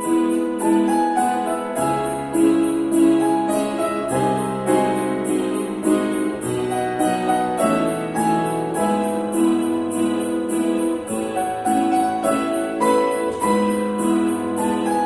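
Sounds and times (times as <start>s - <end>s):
piano keyboard music: 0.0s - 15.0s.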